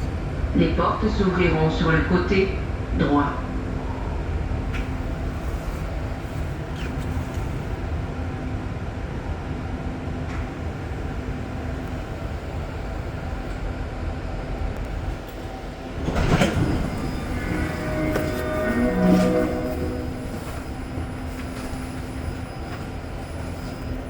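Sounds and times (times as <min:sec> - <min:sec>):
train car rumbling: 0:00.0 - 0:24.0
train doors sliding open: 0:04.6 - 0:08.4, 0:14.5 - 0:24.0.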